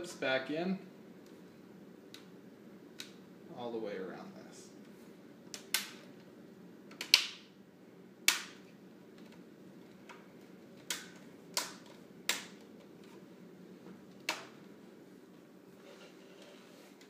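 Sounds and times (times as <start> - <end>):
plastic clips snapping into place: 6.9 - 7.4, 10.8 - 12.7, 14.2 - 14.6.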